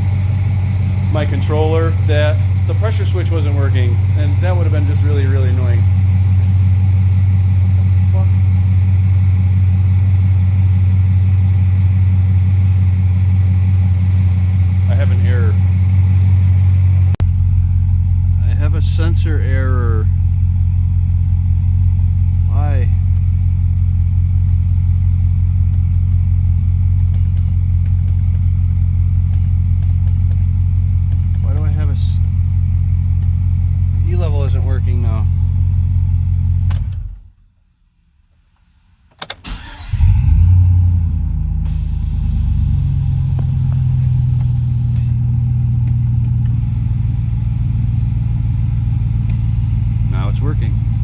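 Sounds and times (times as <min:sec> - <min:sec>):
truck engine idling: 0:00.0 - 0:37.1, 0:41.0 - 0:51.0
sharp clicks: 0:27.1 - 0:28.5, 0:29.3 - 0:30.5, 0:31.1 - 0:32.4.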